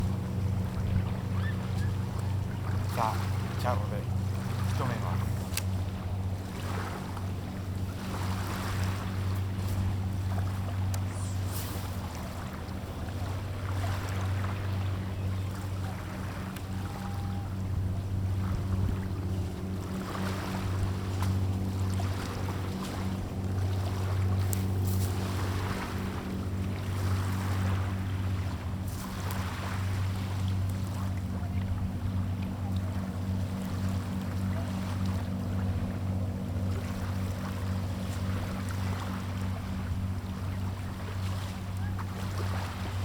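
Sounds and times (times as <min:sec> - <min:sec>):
low motor hum with flutter: 0:00.0 - 0:43.0
water noise: 0:00.0 - 0:43.0
wind: 0:00.0 - 0:43.0.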